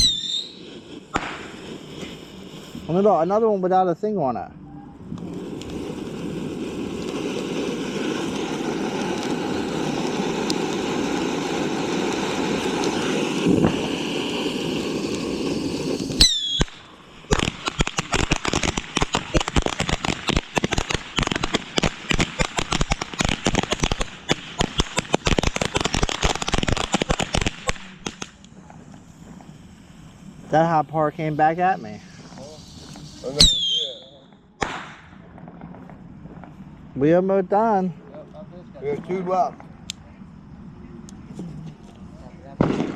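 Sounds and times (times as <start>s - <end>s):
firework bang with whistle: 0.0s - 2.2s, 15.4s - 28.2s, 30.6s - 36.0s
firecracker crackling pops: 0.0s - 3.4s, 5.0s - 36.8s, 38.9s - 40.1s, 41.0s - 42.9s
firework hissing spray: 0.0s - 4.3s, 4.9s - 37.8s.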